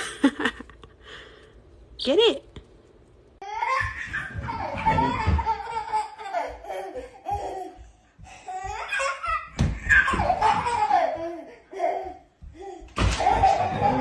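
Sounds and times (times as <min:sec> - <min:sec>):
person laughing: 0:00.0 - 0:00.9.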